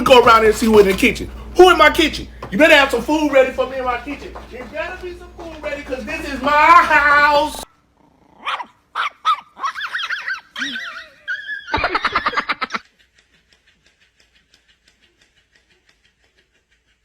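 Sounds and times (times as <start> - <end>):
animal high-pitched calls: 8.4 - 11.8.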